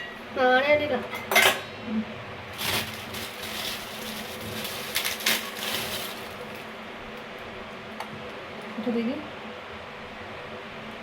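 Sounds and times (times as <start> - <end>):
faint steady hum: 0.0 - 11.0
rustling handling noises: 2.5 - 6.7.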